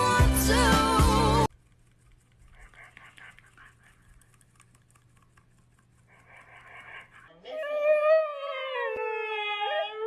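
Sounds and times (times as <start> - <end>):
dog whining: 7.3 - 10.0.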